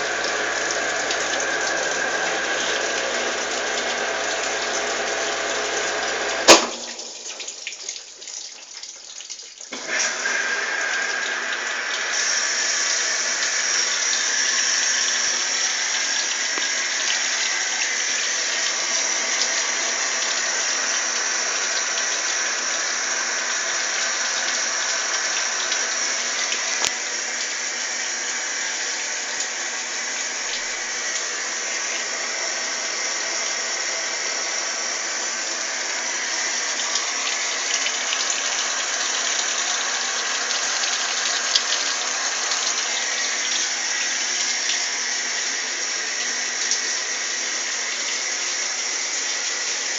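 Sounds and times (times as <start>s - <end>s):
water rushing: 0.0s - 8.0s, 9.7s - 49.9s
washing machine click: 6.4s - 7.6s.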